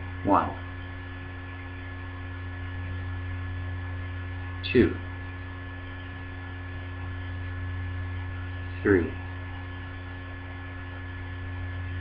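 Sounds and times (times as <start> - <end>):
electrical mains hum: 0.0 - 12.0
man saying a word: 8.8 - 9.2.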